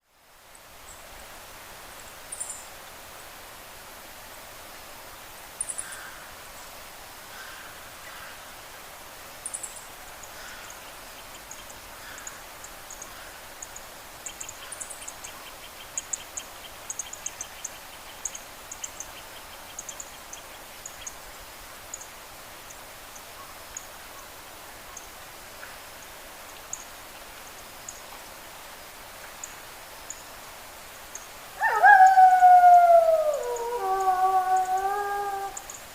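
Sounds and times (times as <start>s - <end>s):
steady hiss: 0.0s - 35.9s
wolf howling: 31.6s - 35.6s.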